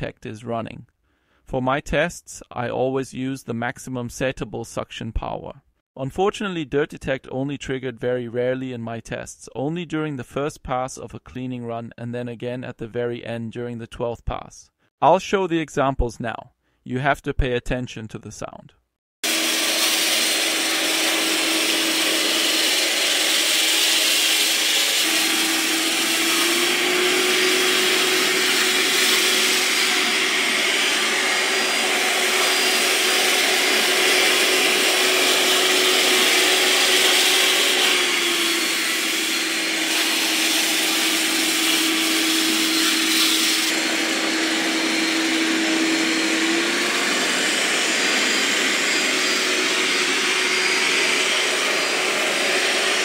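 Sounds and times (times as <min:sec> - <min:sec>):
robot vacuum fan hum: 0:19.2 - 0:53.0.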